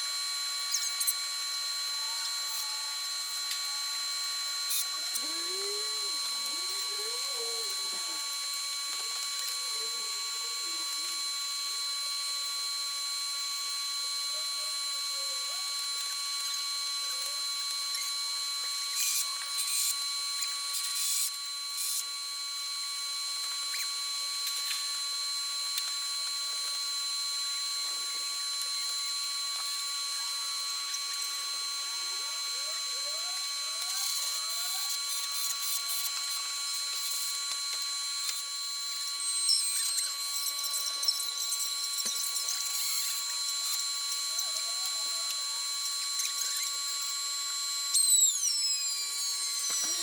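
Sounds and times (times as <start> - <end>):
tool noise bursts: 0.0 - 13.0, 27.5 - 50.0
high-pitched whine: 0.0 - 50.0.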